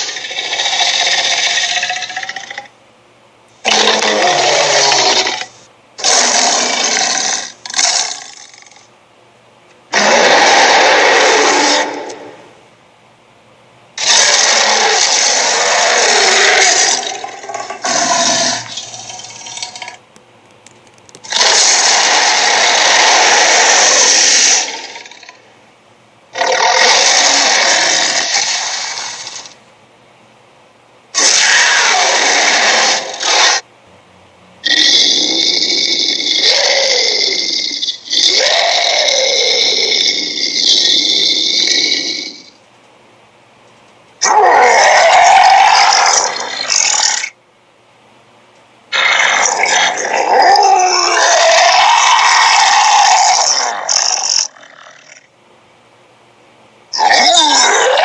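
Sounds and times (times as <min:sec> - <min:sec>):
cartoon monster growls: 0:03.6 - 0:08.8, 0:09.9 - 0:12.4, 0:14.0 - 0:18.8, 0:21.3 - 0:25.4, 0:26.4 - 0:29.6, 0:31.2 - 0:33.6, 0:34.6 - 0:42.4, 0:44.2 - 0:47.3, 0:48.9 - 0:55.3, 0:57.0 - 0:58.0.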